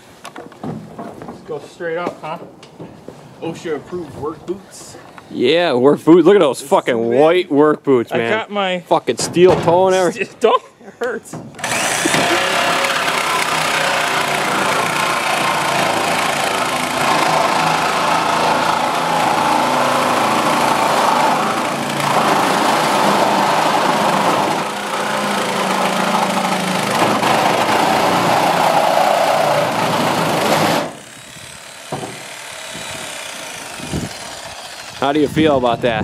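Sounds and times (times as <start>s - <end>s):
reciprocating saw cutting metal: 11.6s - 35.5s.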